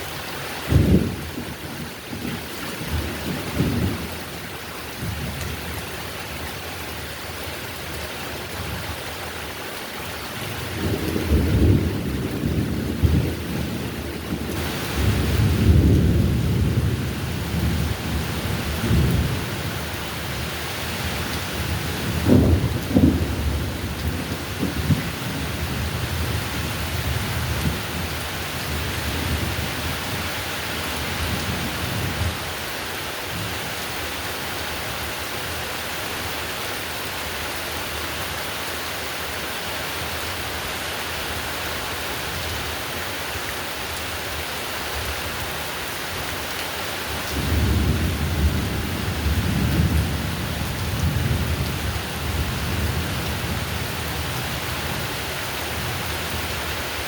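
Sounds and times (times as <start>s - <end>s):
heavy rain hissing: 0.0s - 57.0s
low rolling thunder: 0.7s - 4.2s, 10.4s - 30.2s, 47.3s - 55.2s.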